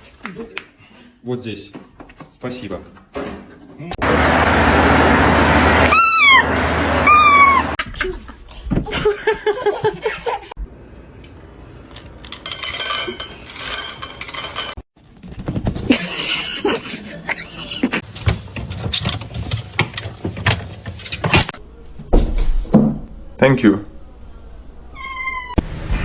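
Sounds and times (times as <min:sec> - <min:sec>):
cat meowing: 0:05.8 - 0:07.8, 0:24.9 - 0:25.6
knocks and rustling: 0:12.4 - 0:16.2, 0:18.0 - 0:23.0.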